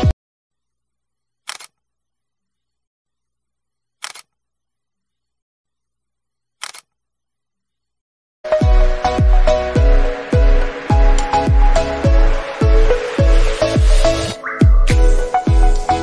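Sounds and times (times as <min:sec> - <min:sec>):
camera shutter clicks: 0:01.5 - 0:01.8, 0:04.0 - 0:04.3, 0:06.6 - 0:06.9.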